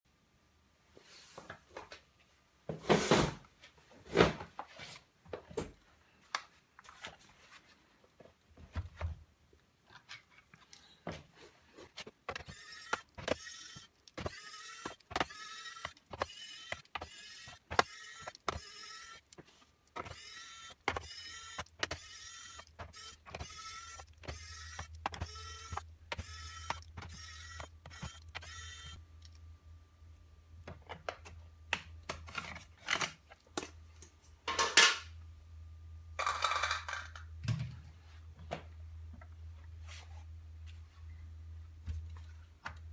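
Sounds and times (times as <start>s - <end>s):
electric screwdriver whining: 12.3s - 19.4s, 20.0s - 29.0s.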